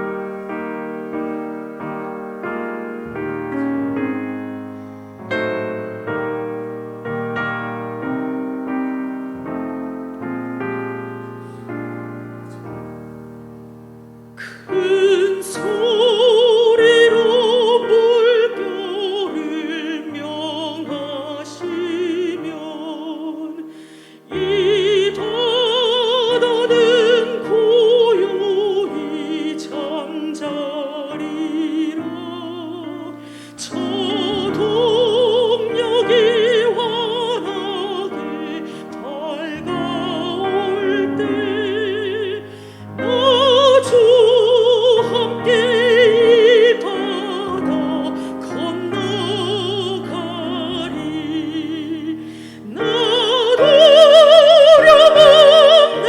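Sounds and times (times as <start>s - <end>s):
piano hymn accompaniment: 0.0s - 56.0s
person singing with vibrato: 14.2s - 56.0s.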